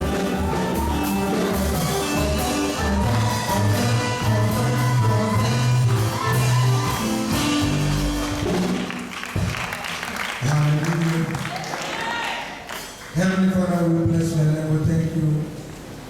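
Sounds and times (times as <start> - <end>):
music with strong bass line: 0.0 - 8.8.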